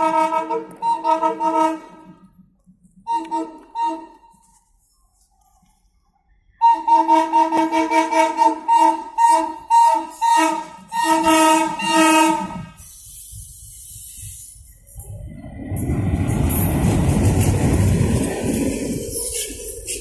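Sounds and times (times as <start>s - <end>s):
locomotive horn honks: 0.0s - 2.2s, 3.0s - 4.4s, 6.6s - 12.8s.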